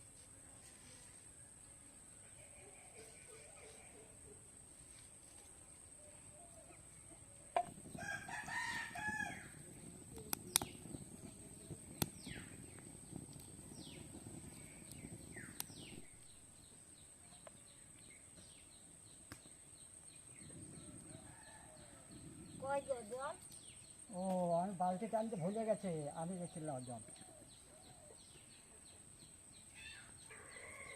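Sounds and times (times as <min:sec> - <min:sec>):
rooster crowing: 0:07.9 - 0:09.7, 0:30.2 - 0:30.9
sharp clicks: 0:10.1 - 0:10.8.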